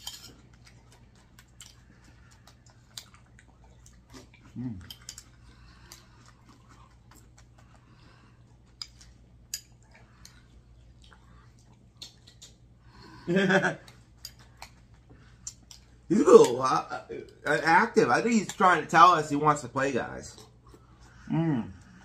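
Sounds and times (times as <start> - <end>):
crunchy cereal being chewed: 0.1 - 12.8, 18.3 - 22.0.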